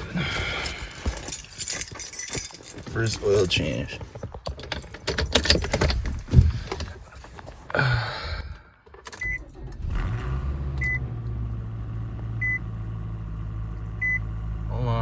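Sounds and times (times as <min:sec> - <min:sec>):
keys jangling: 0:00.1 - 0:06.9
car engine starting and idling: 0:08.8 - 0:15.0.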